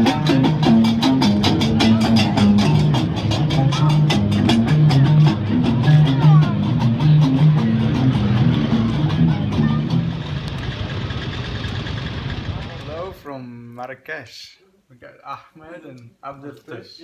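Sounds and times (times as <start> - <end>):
fast beat music with plucked strings: 0.0 - 11.1.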